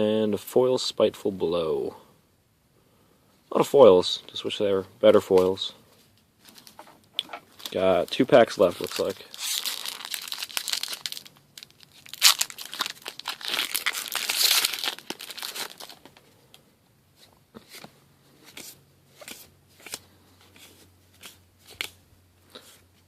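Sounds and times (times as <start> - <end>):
foil wrapper tearing and crinkling: 7.6 - 16.1.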